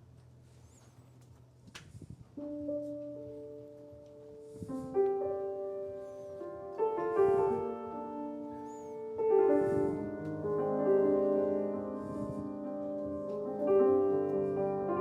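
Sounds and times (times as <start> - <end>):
slow piano chords: 2.3 - 15.0.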